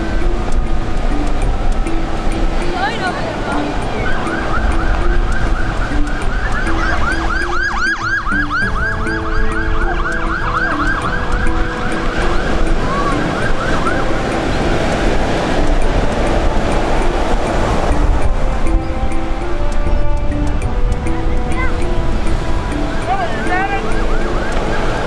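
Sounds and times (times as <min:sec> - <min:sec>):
storm wind and surf: 0:00.0 - 0:25.0
emergency siren yelping: 0:02.7 - 0:14.7, 0:20.8 - 0:25.0.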